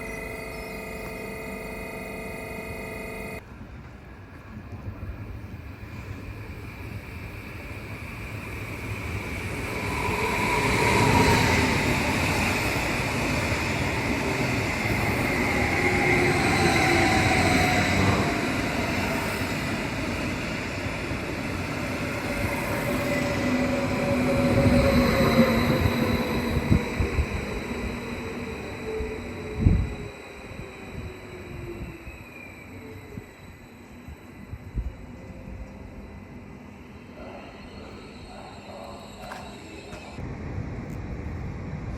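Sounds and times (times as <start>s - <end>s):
tones sliding down in pitch: 0.0s - 3.4s
train running on rails: 0.0s - 41.9s.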